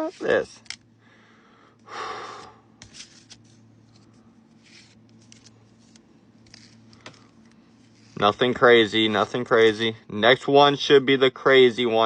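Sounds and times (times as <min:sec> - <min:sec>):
trading cards sliding and rustling: 0:00.0 - 0:00.8, 0:02.3 - 0:08.6.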